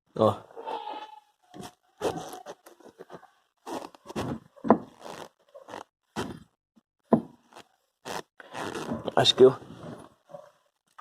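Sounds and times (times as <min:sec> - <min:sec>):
seat backrest scraping and knocking: 0:06.2 - 0:06.5.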